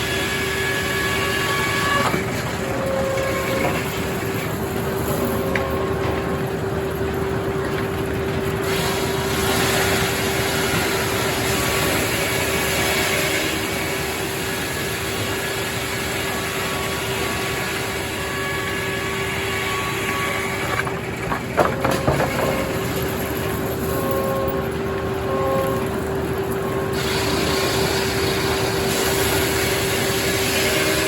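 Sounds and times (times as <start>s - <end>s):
circular saw running: 0.0s - 31.0s
mechanical din: 20.8s - 26.0s
knocks: 21.2s - 22.9s.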